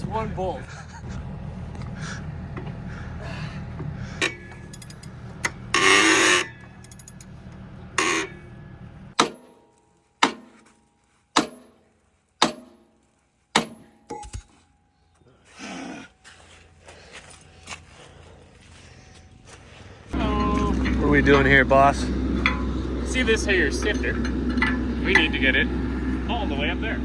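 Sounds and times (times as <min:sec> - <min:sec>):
heavy machine engine rumble: 0:00.0 - 0:09.2, 0:18.3 - 0:27.0
metal clanks: 0:04.2 - 0:07.4, 0:22.3 - 0:25.7.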